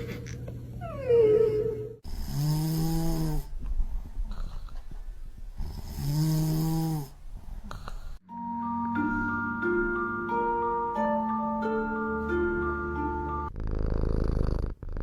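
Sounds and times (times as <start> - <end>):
cat snoring: 2.0 - 3.5, 4.3 - 4.8, 5.6 - 8.2, 13.5 - 15.0.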